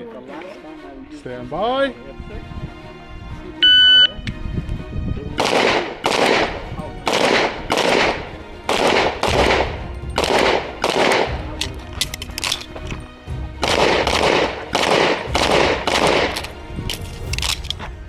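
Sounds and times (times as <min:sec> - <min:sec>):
rapid pistol fire: 0:05.4 - 0:06.5, 0:13.6 - 0:16.4.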